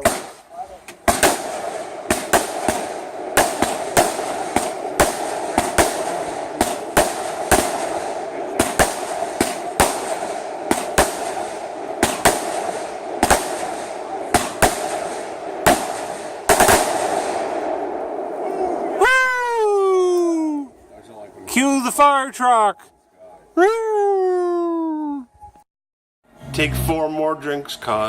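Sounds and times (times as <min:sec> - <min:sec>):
fireworks hissing and cracking: 0:00.0 - 0:17.3.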